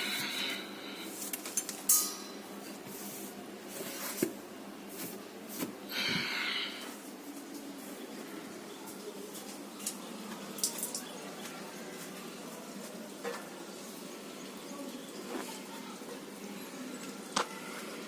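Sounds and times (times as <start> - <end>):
refrigerator fan hiss: 0.0 - 1.8, 2.4 - 8.1.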